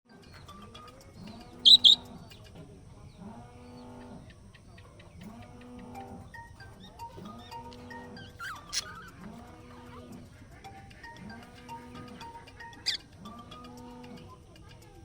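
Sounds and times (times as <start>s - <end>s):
quiet repeating music phrase: 1.2s - 3.2s, 4.4s - 15.0s
budgerigar chirping: 1.6s - 2.1s, 6.8s - 9.2s, 9.8s - 13.1s.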